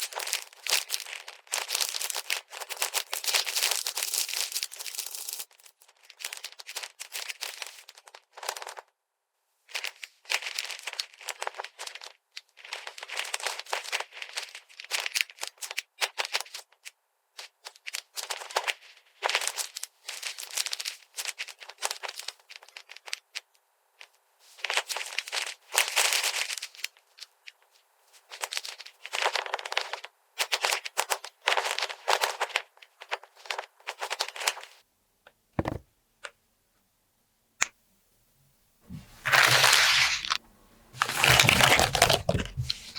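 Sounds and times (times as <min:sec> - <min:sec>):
plastic packaging crinkling: 0:00.0 - 0:08.8, 0:10.4 - 0:15.5, 0:39.0 - 0:40.4, 0:41.0 - 0:42.9.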